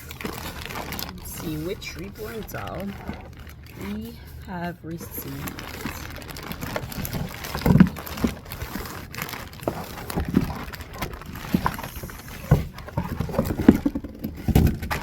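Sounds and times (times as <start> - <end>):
cardboard box knocks and thumps: 6.8 - 15.0.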